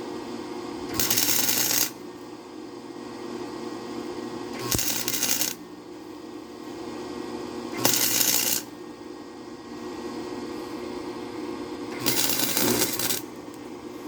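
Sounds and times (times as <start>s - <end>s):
arc welding crackle: 0.9s - 2.0s, 4.6s - 5.6s, 7.8s - 8.7s, 12.0s - 13.4s.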